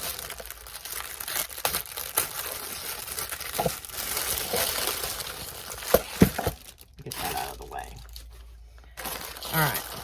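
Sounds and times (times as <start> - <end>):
plastic packaging crinkling: 0.0 - 10.0.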